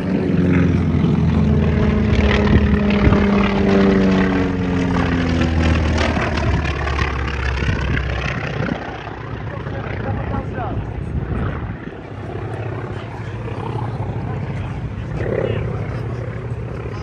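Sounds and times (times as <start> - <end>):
propeller aircraft passing: 0.0 - 17.0.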